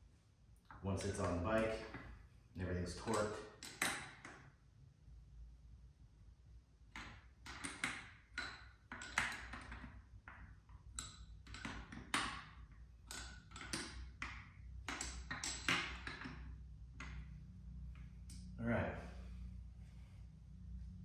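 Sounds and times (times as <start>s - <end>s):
metallic clinks and taps: 7.0s - 17.4s.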